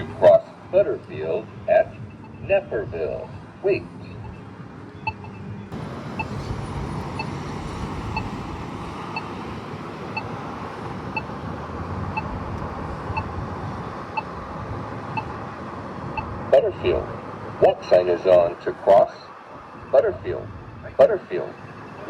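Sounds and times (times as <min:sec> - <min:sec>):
pedestrian signal ticking: 0:00.0 - 0:10.4, 0:11.1 - 0:11.3, 0:12.1 - 0:13.4, 0:15.1 - 0:15.4
passing road traffic: 0:00.0 - 0:22.0.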